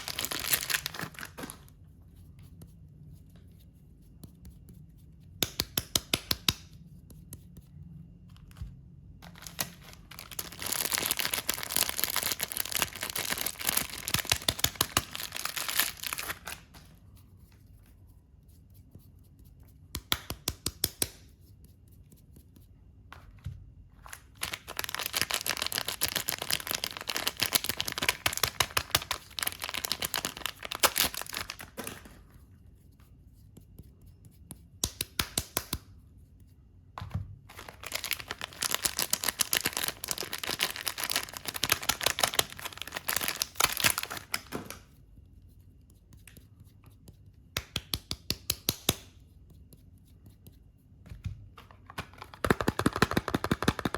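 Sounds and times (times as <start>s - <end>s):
wrapping tearing and crackling: 0.0s - 1.7s, 9.2s - 16.8s, 24.0s - 31.8s, 37.5s - 44.5s, 51.9s - 53.9s.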